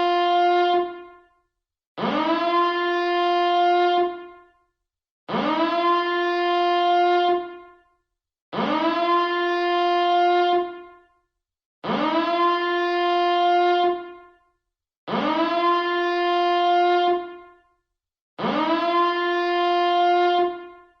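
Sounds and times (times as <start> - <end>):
rising alarm siren blasts: 2.0 - 3.2, 5.3 - 6.5, 8.6 - 9.8, 11.8 - 14.0, 15.1 - 17.5, 18.4 - 20.8.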